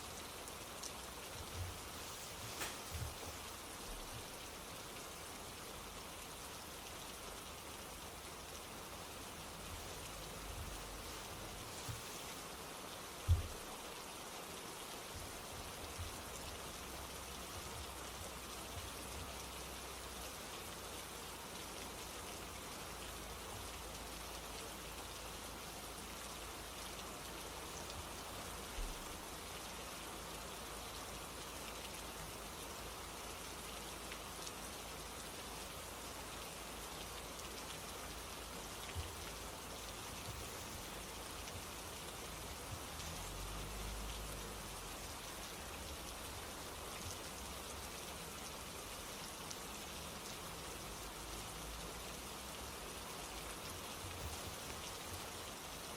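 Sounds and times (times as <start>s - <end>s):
steady rain: 0.0s - 55.9s
soft low thump: 13.3s - 13.6s.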